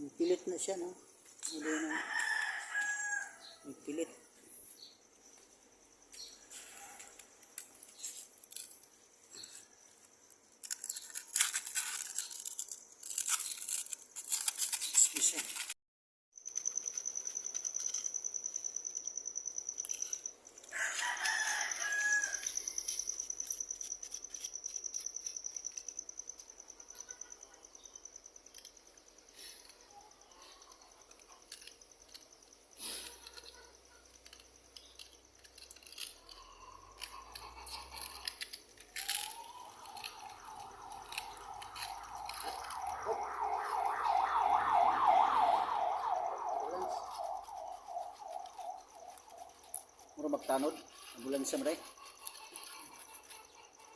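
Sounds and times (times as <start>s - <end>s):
rooster crowing: 1.6s - 3.7s, 20.7s - 22.6s, 39.2s - 49.8s
ambulance siren: 39.0s - 50.8s
high-pitched pulsing buzz: 39.7s - 50.0s.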